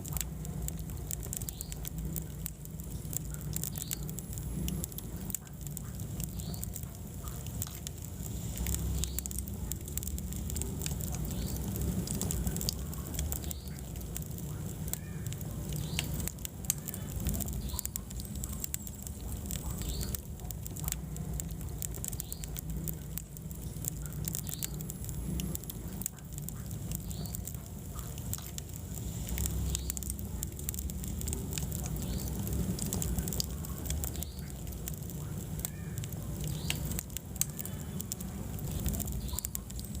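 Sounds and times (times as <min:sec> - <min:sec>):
fire crackles and pops: 0:00.0 - 0:40.0
wood fire flames rumbling: 0:00.0 - 0:40.0.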